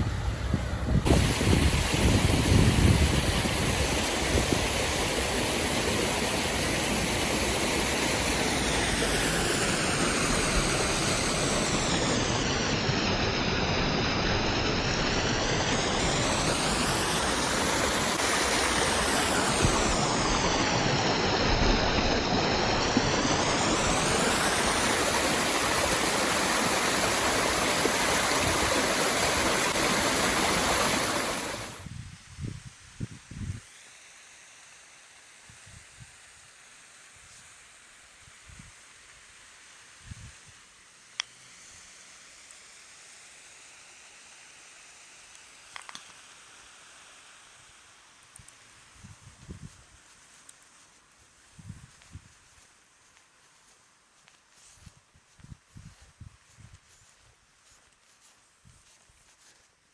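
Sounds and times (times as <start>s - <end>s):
waterfall rushing: 1.0s - 31.8s.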